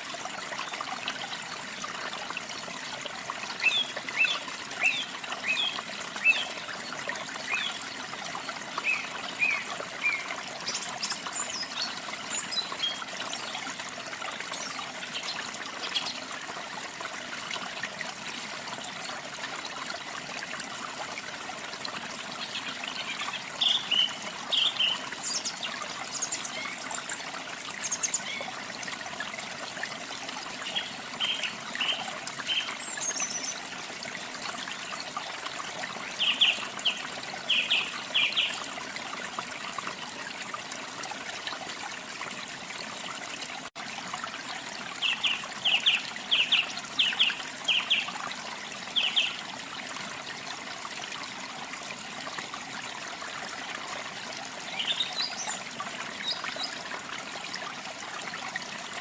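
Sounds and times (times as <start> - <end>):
water trickling and splashing: 0.0 - 59.0.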